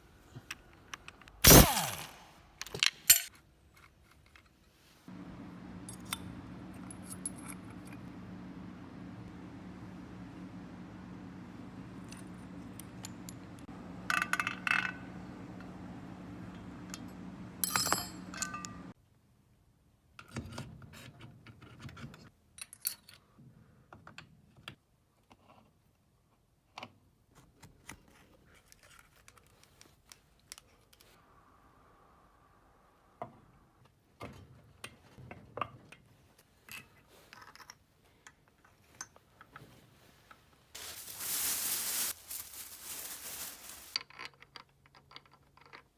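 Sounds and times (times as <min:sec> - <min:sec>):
loud hiss: 0:01.4 - 0:02.2
metal parts and tools clinking: 0:01.5 - 0:04.5, 0:06.8 - 0:08.0, 0:17.6 - 0:18.9
steady hum: 0:05.1 - 0:18.9.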